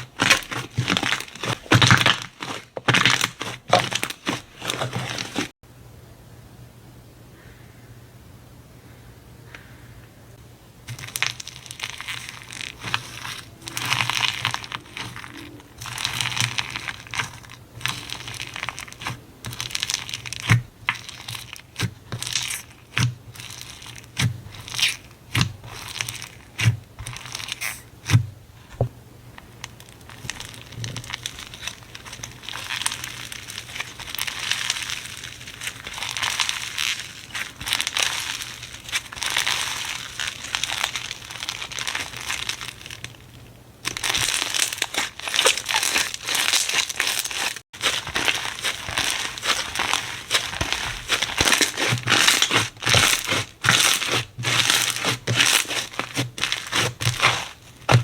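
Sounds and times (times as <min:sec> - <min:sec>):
slime crackling and crinkling: 0:00.0 - 0:05.6, 0:10.8 - 0:58.0.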